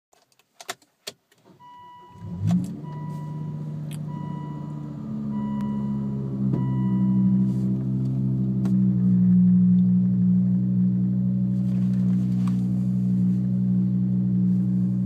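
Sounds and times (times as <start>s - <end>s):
ignition clicks: 0.2s - 8.8s
car engine starting and idling: 1.4s - 15.0s
dashboard chime beeping: 1.6s - 7.6s.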